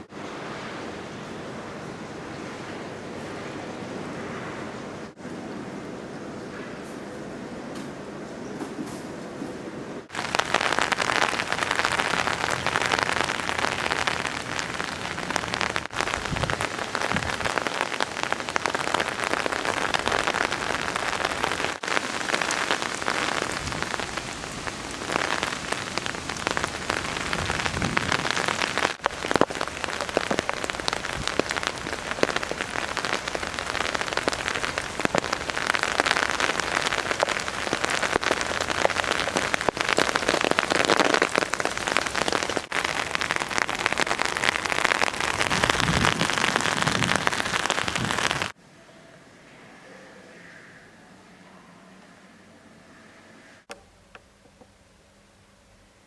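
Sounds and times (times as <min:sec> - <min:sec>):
heavy rain pattering: 0:10.0 - 0:48.6.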